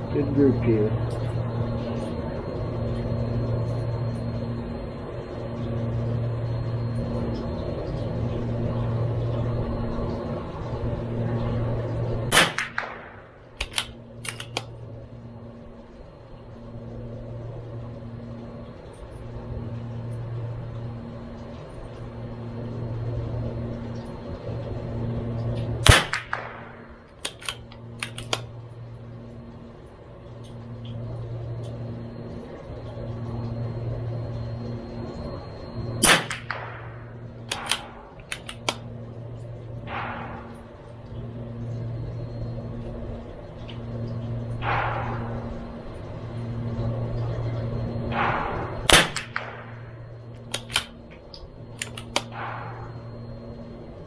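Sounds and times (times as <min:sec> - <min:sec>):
low pulsing hum: 0:00.0 - 0:54.0
rifle shots: 0:12.3 - 0:14.6, 0:25.8 - 0:28.4, 0:36.0 - 0:38.7, 0:48.1 - 0:49.8
rifle bolt clicks: 0:13.6 - 0:14.7, 0:27.2 - 0:28.5, 0:37.5 - 0:38.8, 0:50.5 - 0:50.9, 0:51.8 - 0:52.3.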